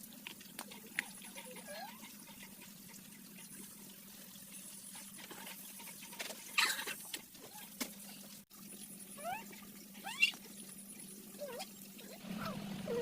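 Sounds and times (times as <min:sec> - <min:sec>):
faint trickling water: 0:00.0 - 0:13.0.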